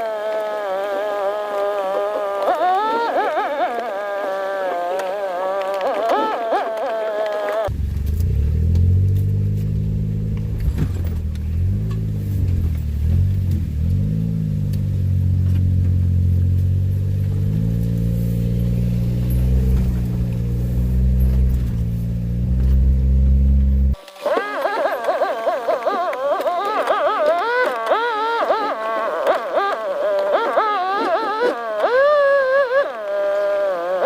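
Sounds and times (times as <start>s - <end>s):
vehicle engine running: 7.7s - 24.0s.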